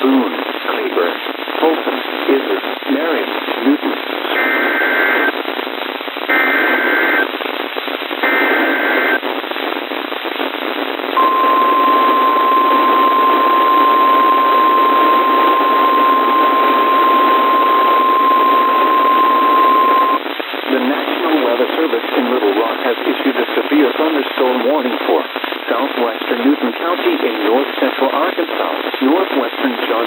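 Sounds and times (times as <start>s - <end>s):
radio hiss: 0.0s - 30.0s
steady warning alarm tone: 6.3s - 7.2s, 8.2s - 9.2s, 11.2s - 20.2s
two-tone digital data bursts: 6.3s - 7.3s, 8.2s - 9.2s, 11.2s - 20.2s.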